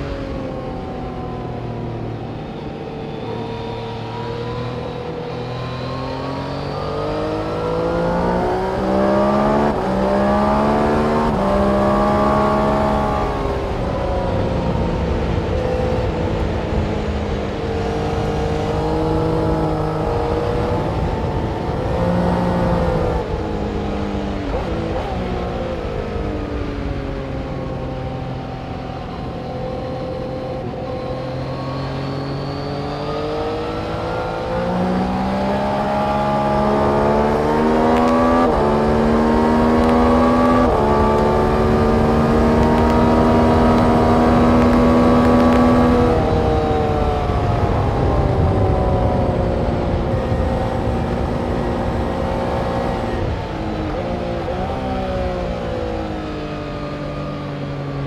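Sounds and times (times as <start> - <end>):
race car engine running: 28.6 - 58.0.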